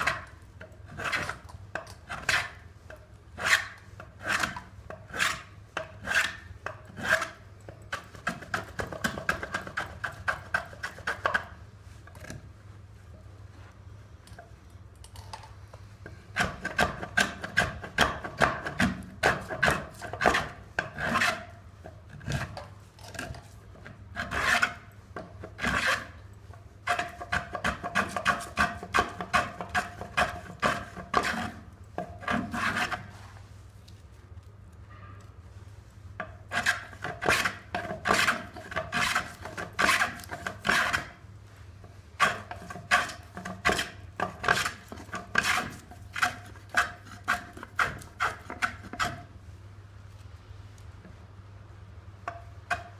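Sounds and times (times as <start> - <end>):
hand plane scraping wood: 0.9 - 1.4, 3.4 - 7.4, 16.3 - 21.5, 24.1 - 26.2, 26.8 - 33.3, 36.5 - 41.2, 42.2 - 49.2.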